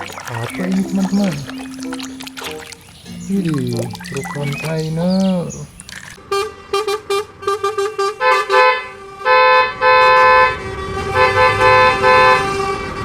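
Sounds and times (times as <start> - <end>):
musical vehicle horn tune: 6.2 - 13.0.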